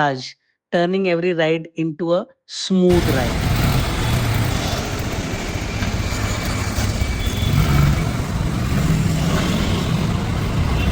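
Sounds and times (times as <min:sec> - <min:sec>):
road noise: 0:02.9 - 0:10.9
vehicle engine running: 0:02.9 - 0:10.9.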